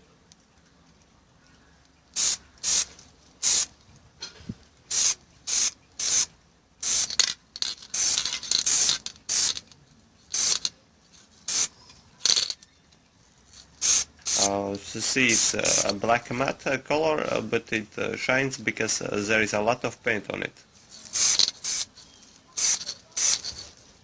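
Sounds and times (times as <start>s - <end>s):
aerosol spray can hissing: 2.2s - 3.8s, 4.9s - 9.7s, 10.3s - 10.7s, 11.4s - 12.5s, 13.7s - 16.0s, 20.9s - 23.7s.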